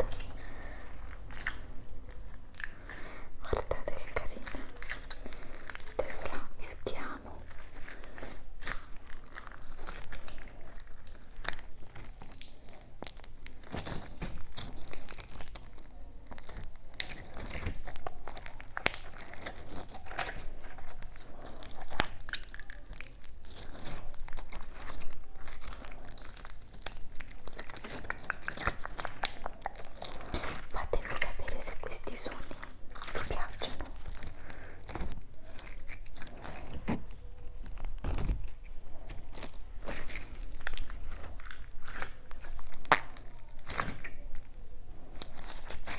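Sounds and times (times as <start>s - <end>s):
plastic packaging crinkling: 0.0s - 45.9s.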